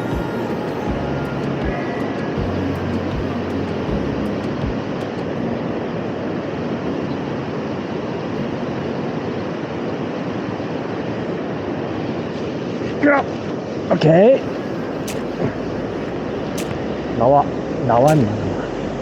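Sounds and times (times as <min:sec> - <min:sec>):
steady rushing outdoor noise: 0:00.0 - 0:19.0.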